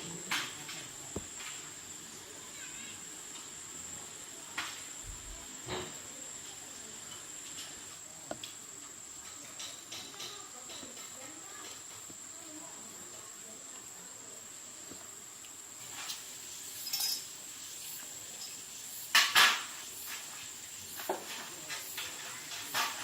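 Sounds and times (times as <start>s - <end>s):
faint steady hiss: 0.0s - 23.0s
clinks of small hard objects: 15.8s - 23.0s.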